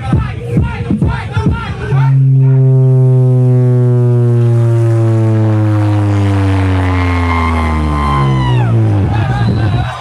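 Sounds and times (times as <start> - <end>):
deep bass tone sliding down: 0.0 - 10.0
high whistling tone: 4.1 - 10.0.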